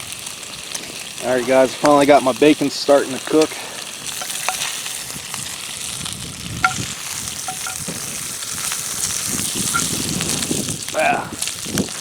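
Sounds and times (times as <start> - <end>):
bacon sizzling in a pan: 0.0 - 12.0
fat popping: 3.4 - 5.2, 6.6 - 8.3, 9.4 - 10.0.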